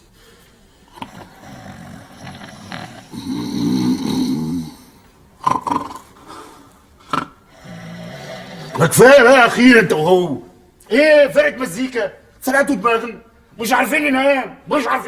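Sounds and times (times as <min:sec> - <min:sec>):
men snoring: 0:00.0 - 0:09.2.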